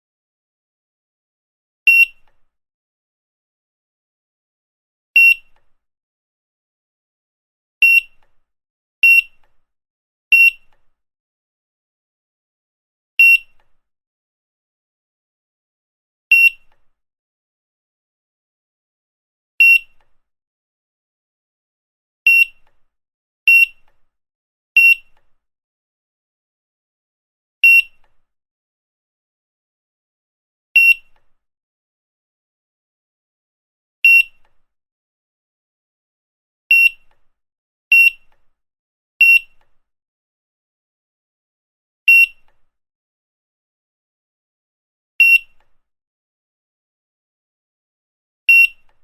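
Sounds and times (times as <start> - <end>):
barcode scanner beeps: 1.9 - 2.2, 5.2 - 5.5, 7.8 - 8.2, 9.0 - 9.4, 10.4 - 10.7, 13.2 - 13.6, 22.3 - 22.6, 24.8 - 25.1, 34.1 - 34.4, 36.7 - 37.0, 37.9 - 38.3, 39.2 - 39.6, 42.1 - 42.4, 48.5 - 48.9.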